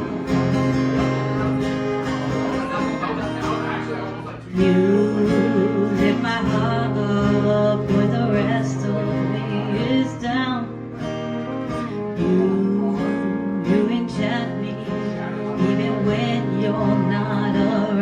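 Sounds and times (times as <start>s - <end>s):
acoustic guitar: 0.0s - 18.0s
person singing wordlessly: 4.3s - 10.6s.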